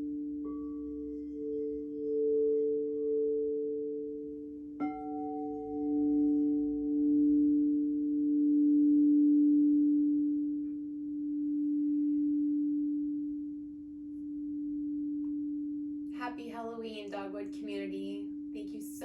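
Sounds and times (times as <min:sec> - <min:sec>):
crystal singing bowl ringing: 0:00.0 - 0:18.6.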